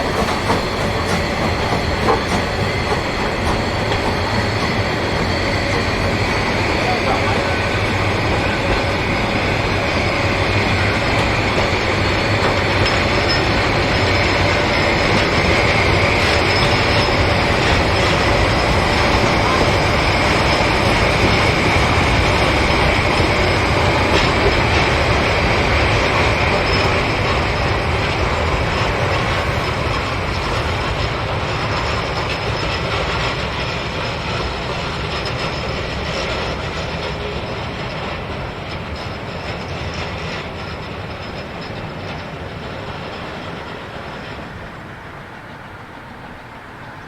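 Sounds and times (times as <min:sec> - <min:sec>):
high-pitched squeal: 0:00.0 - 0:44.4
train rumbling on rails: 0:00.0 - 0:47.0.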